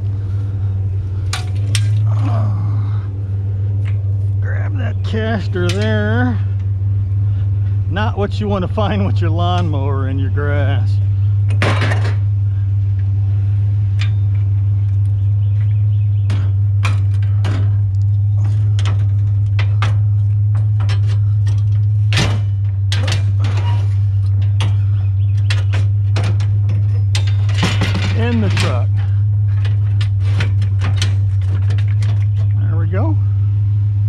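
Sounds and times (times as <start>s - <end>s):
truck engine idling: 0.0s - 34.0s
scrap metal clanking: 1.2s - 2.2s, 5.1s - 6.7s, 11.2s - 12.3s, 13.3s - 32.7s.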